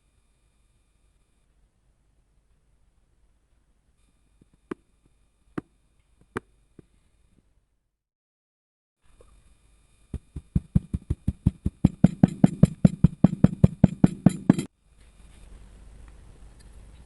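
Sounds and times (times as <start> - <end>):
rapid evenly spaced knocks: 10.1 - 14.7.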